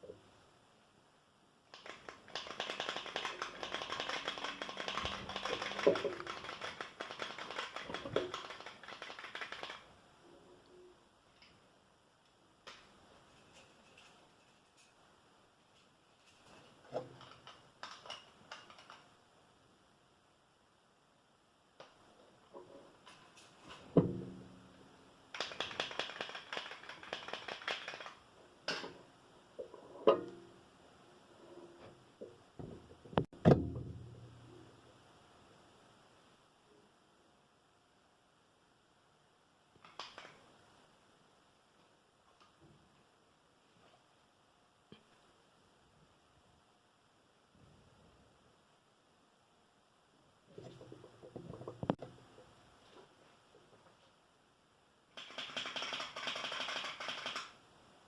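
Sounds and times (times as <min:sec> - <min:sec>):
plastic parts clicking and clattering: 0:01.7 - 0:09.8.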